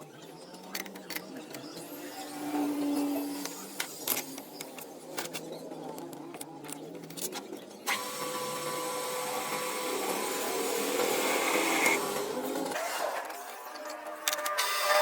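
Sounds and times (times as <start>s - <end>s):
electric power tool whirring: 7.9s - 13.2s.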